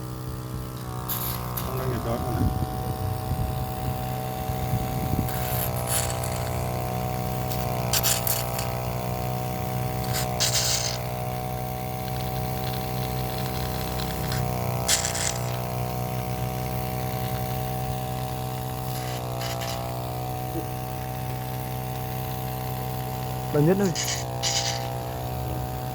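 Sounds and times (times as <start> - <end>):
suction machine motor running: 0.0 - 25.9
hissing slurp of suction nozzle: 1.0 - 1.9, 4.6 - 25.3.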